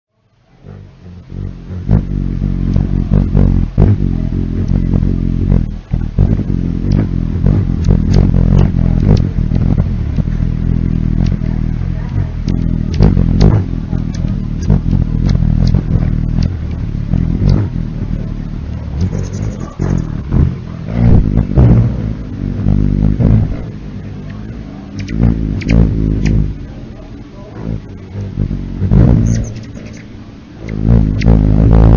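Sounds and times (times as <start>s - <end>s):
hummingbird wings humming: 0.4s - 31.9s
short sharp ticks: 24.2s - 26.4s, 29.2s - 31.4s.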